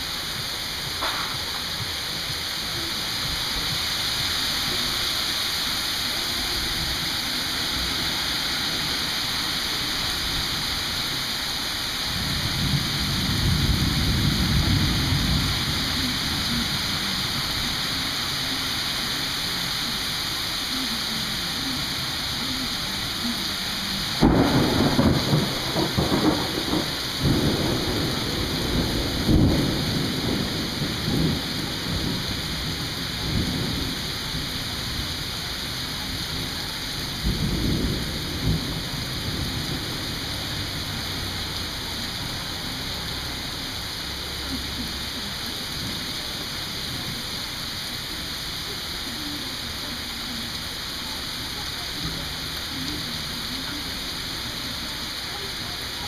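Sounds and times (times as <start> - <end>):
steady rain: 0.0 - 56.0
low thunder rumble: 12.0 - 17.7, 24.2 - 42.8
loud thunder clap: 24.2 - 32.2.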